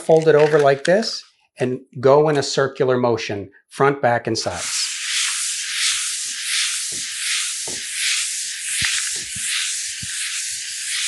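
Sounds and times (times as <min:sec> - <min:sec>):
sandpaper rubbing on wood: 0:04.5 - 0:11.0.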